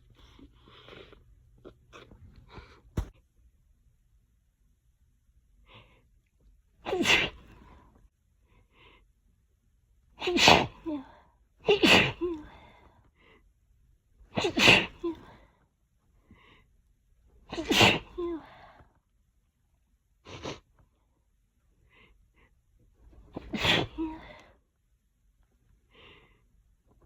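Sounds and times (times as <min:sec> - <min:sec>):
sniffs and breaths: 0:00.0 - 0:01.3, 0:01.9 - 0:03.1, 0:20.2 - 0:21.0
person sneezing: 0:06.8 - 0:07.7, 0:10.2 - 0:11.0, 0:11.6 - 0:12.6, 0:14.3 - 0:15.4, 0:17.5 - 0:18.6, 0:23.3 - 0:24.4.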